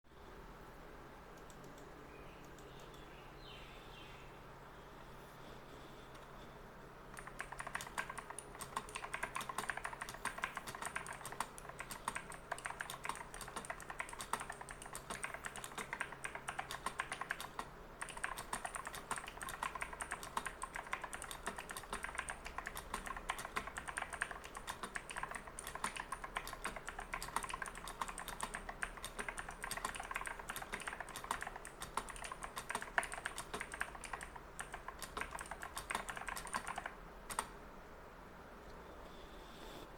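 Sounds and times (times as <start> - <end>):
clicky mechanical keyboard typing: 1.4 - 1.9, 7.1 - 37.6.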